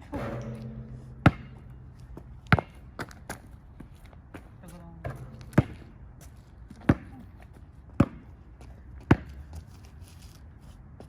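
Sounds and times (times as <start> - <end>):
basketball bouncing: 5.0 - 7.1.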